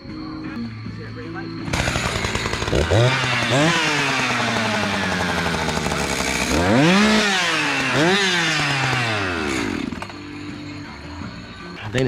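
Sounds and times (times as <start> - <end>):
chainsaw revving: 1.6 - 10.4.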